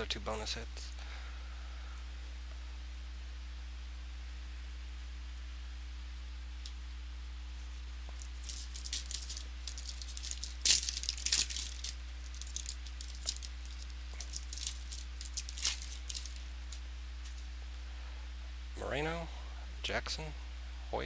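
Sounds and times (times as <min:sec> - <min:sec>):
cards being handled: 0:08.1 - 0:17.5
wrapper crinkling and tearing: 0:08.1 - 0:17.5.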